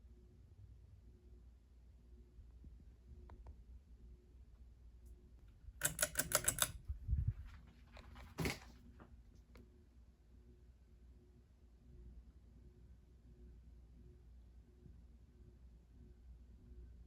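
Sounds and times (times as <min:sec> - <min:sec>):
pull chain metallic clicks: 0:05.8 - 0:06.8.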